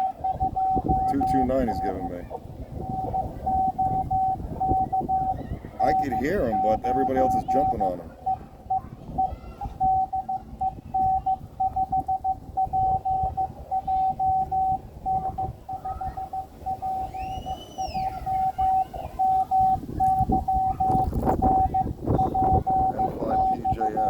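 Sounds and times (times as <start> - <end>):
morse code tone: 0.0 - 24.0
radio band noise hiss: 20.9 - 24.0.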